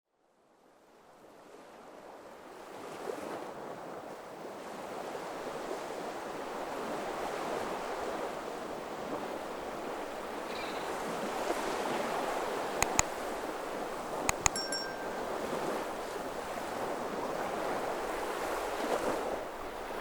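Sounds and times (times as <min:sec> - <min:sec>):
ocean waves on shore: 0:00.8 - 0:20.0.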